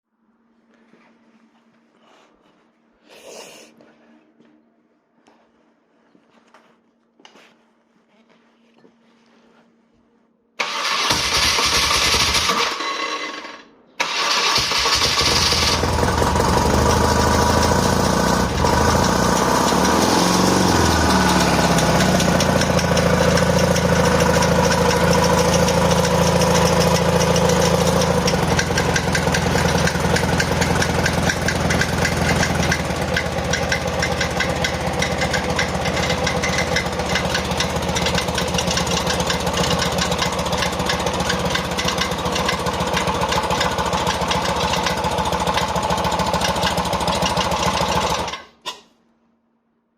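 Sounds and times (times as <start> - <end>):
rapid mechanical engine knocking: 14.3 - 48.4
motorcycle engine idling: 14.9 - 48.3.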